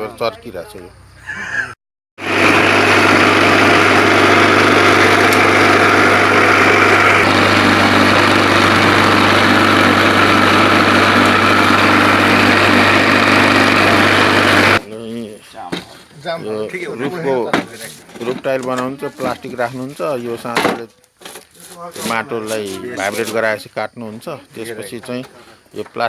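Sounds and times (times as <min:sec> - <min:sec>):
electric vibrator humming: 0:02.2 - 0:14.8.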